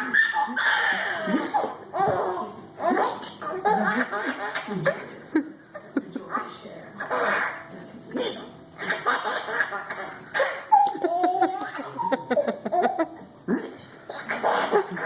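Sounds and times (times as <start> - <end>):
person laughing: 10.8 - 15.0.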